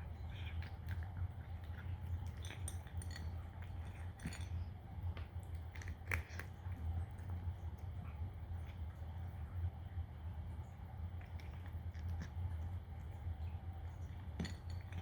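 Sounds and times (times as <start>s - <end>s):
cat crunching dry kibble: 0.0s - 9.6s, 10.5s - 15.0s
kibble clicking against bowl: 0.5s - 4.6s.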